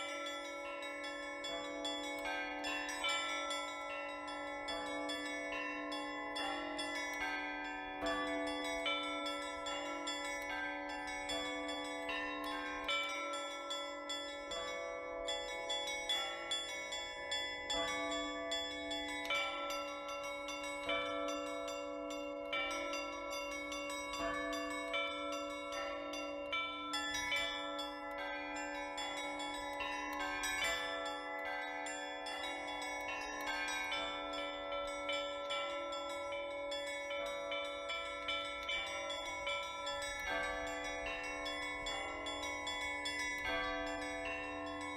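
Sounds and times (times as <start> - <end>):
large bell humming: 0.0 - 44.9
small church bells struck rhythmically: 0.0 - 44.9.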